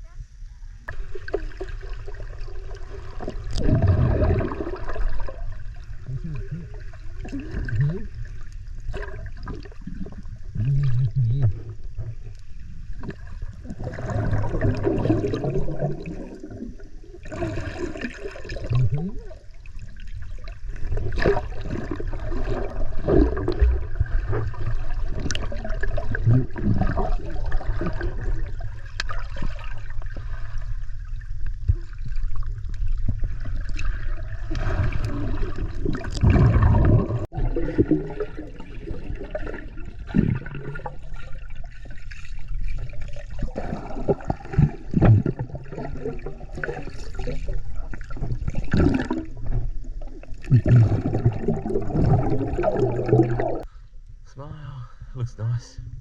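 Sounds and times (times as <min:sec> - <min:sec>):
water splashing and gurgling: 0:00.8 - 0:53.7.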